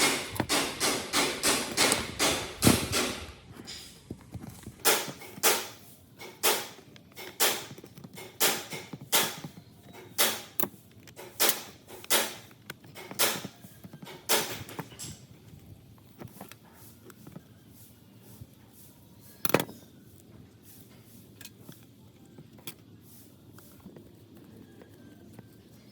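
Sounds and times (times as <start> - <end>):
hand tool knocking on metal: 0.0 - 3.8.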